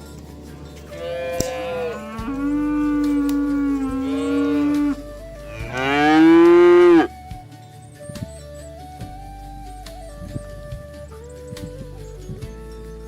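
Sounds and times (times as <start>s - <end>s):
cattle mooing: 0.9s - 7.1s.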